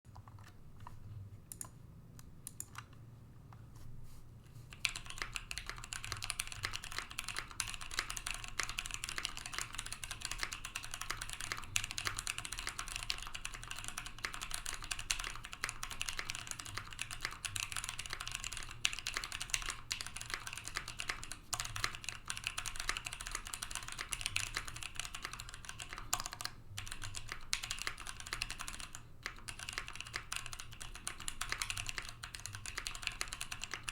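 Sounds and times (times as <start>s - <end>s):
mechanical keyboard typing: 2.5s - 2.9s, 4.7s - 33.9s.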